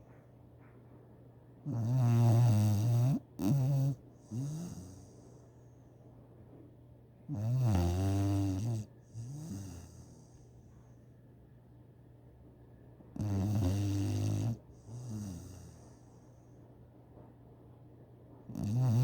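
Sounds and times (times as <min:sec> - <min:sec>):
loud pitched snores: 0:01.7 - 0:05.0, 0:07.3 - 0:10.3, 0:13.2 - 0:15.8, 0:18.5 - 0:19.0
quiet breath: 0:04.1 - 0:06.2, 0:09.0 - 0:11.2, 0:14.6 - 0:17.3.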